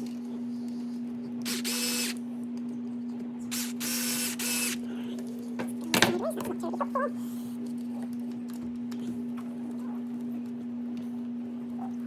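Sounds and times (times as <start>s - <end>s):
electric screwdriver whirring: 1.5s - 2.2s, 3.5s - 4.8s.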